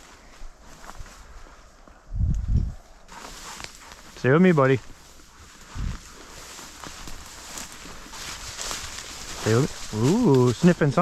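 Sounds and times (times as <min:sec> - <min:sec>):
footsteps through leaf litter: 0:03.1 - 0:11.0.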